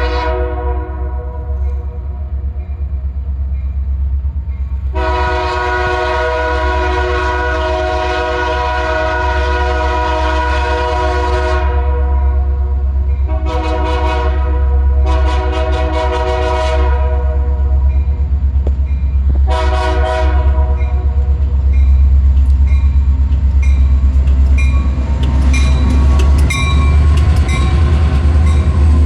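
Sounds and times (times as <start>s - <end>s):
locomotive air horn blasts: 0.0s - 1.6s, 4.9s - 12.5s, 13.3s - 17.7s, 19.4s - 21.2s.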